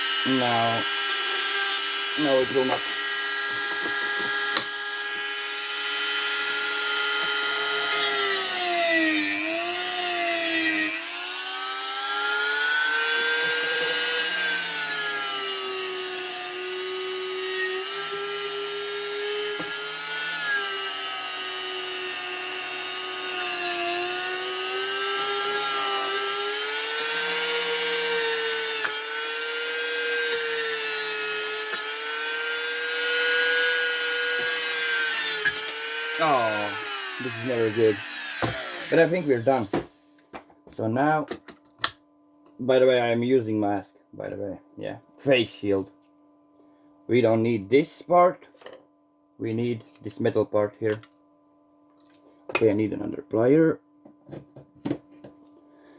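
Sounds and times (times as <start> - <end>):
power tool cutting metal: 0.0 - 39.9.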